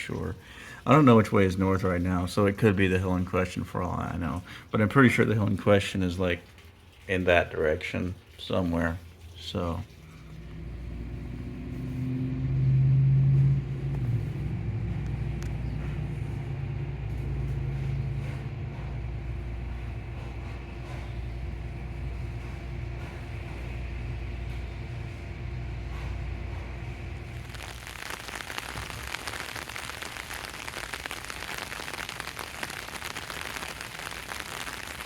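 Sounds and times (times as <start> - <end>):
low mechanical hum and rumble: 0.0 - 35.0.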